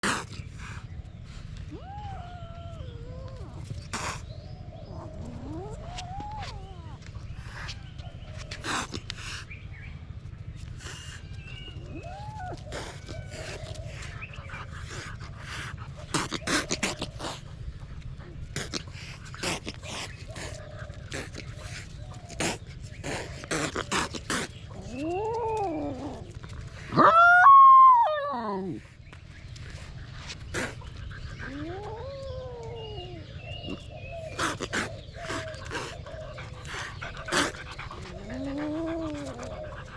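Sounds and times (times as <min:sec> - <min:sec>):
dog and kitten play fighting: 0:00.0 - 0:09.5, 0:10.2 - 0:39.9
steady low hum: 0:00.0 - 0:39.9
animal whining call: 0:01.7 - 0:09.3, 0:10.8 - 0:15.3, 0:30.2 - 0:39.9.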